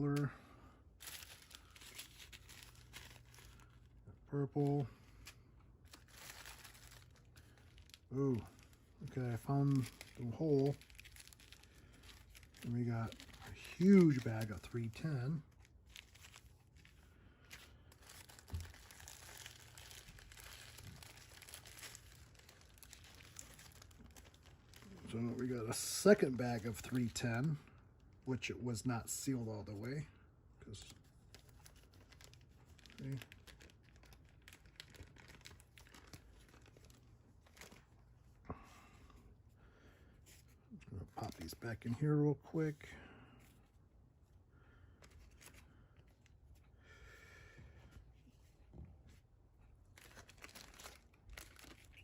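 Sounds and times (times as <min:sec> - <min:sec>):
plastic bags crinkling: 0:01.0 - 0:04.0, 0:04.7 - 0:27.5, 0:30.8 - 0:38.0, 0:49.9 - 0:52.0.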